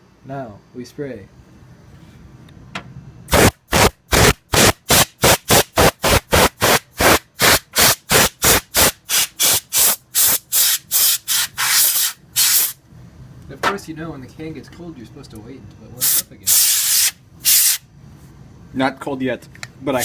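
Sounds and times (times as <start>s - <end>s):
compressed air spray hissing bursts: 3.3s - 12.8s, 16.0s - 17.8s.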